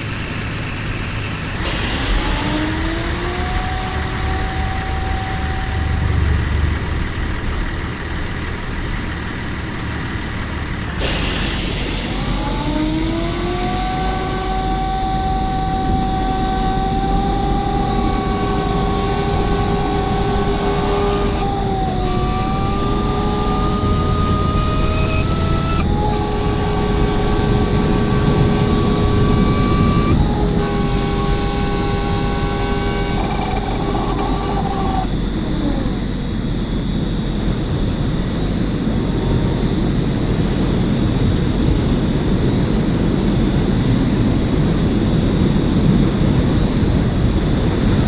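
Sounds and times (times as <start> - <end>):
constant rushing noise: 0.0 - 48.0
warning siren wailing: 1.6 - 9.9, 11.0 - 39.4.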